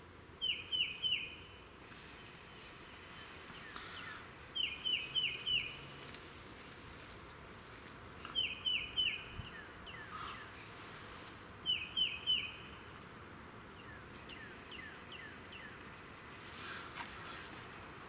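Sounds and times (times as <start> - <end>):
songbird whistling: 11.7 - 12.7.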